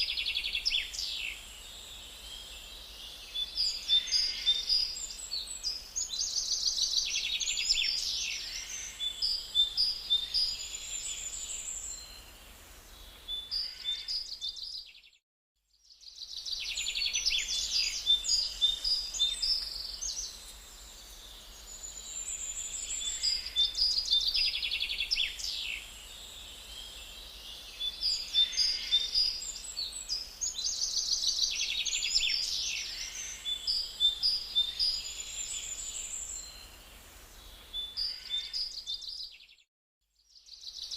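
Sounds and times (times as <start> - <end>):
faint steady hiss: 0.0 - 14.2, 16.1 - 38.2
songbirds chirping: 0.0 - 40.9.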